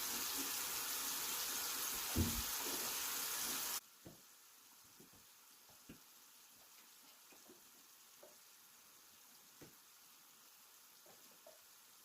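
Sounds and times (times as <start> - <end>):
shower water spraying: 0.0 - 3.8
knock: 2.1 - 2.5.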